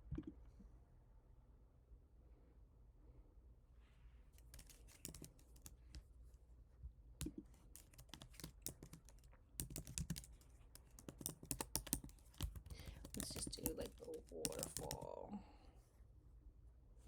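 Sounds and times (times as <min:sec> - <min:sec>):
faint keyboard typing: 0:04.3 - 0:06.4, 0:07.2 - 0:15.5.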